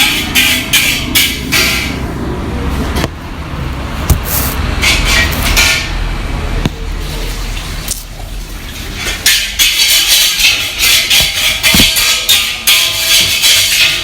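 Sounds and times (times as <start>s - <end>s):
sharp metal clanks: 0.0s - 2.1s, 9.0s - 14.0s
metal spatula scraping a wok: 0.0s - 2.2s, 4.2s - 6.0s, 8.7s - 14.0s.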